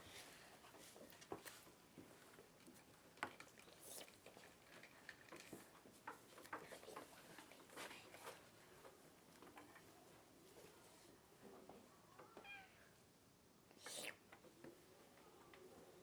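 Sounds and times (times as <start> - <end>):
faint small clicks and rustles: 0.0 - 12.5.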